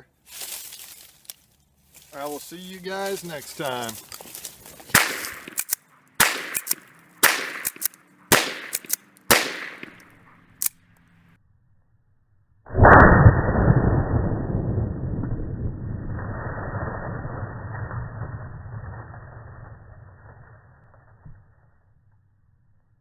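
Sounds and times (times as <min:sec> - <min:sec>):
faint cracks: 0:03.0 - 0:11.1
shotgun shots: 0:04.9 - 0:10.4.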